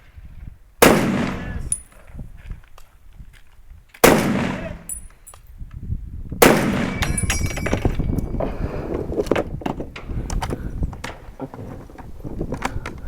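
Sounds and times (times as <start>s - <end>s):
gunshots with echo: 0.8s - 1.7s, 4.0s - 4.9s, 6.4s - 7.5s.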